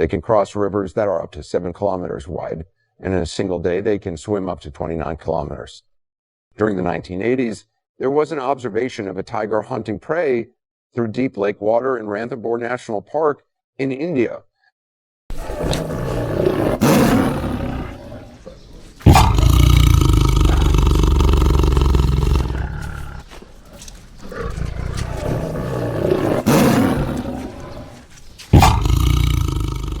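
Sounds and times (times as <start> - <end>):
tiger roaring: 15.3 - 30.0.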